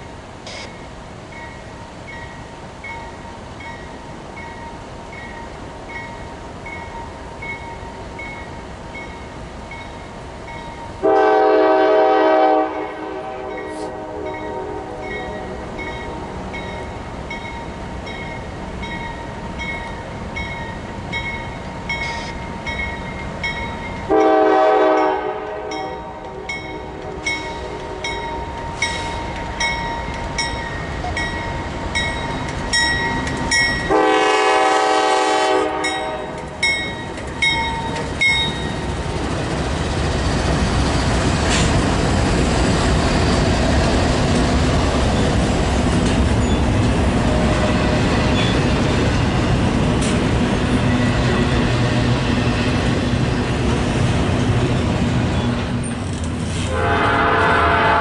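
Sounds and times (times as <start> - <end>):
locomotive air horn blasts: 11.0 - 15.6, 24.1 - 28.2, 33.9 - 36.4, 56.7 - 58.0
train wheels clicking over rail joints: 15.0 - 24.3, 25.8 - 34.0, 35.9 - 56.8
bell dinging: 35.9 - 38.8.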